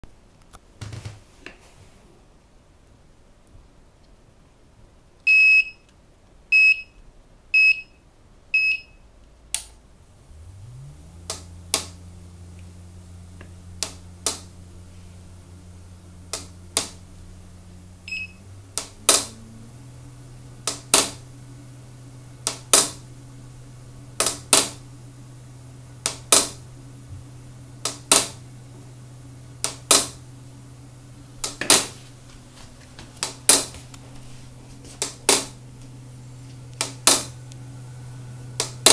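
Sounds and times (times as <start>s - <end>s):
motor humming: 10.0s - 38.9s
machine beeping: 18.0s - 18.5s.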